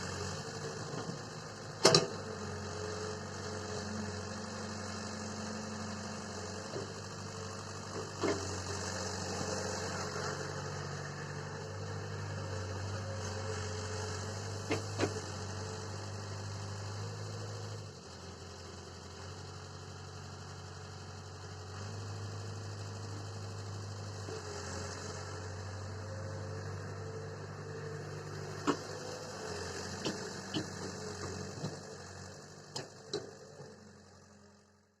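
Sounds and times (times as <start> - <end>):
diesel tractor engine running: 0.0 - 35.0.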